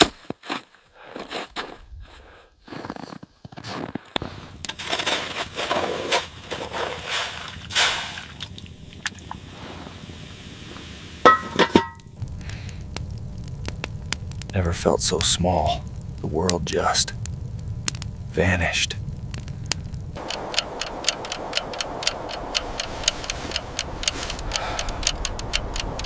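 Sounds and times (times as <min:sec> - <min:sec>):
crunching and rustling: 0:00.0 - 0:10.0.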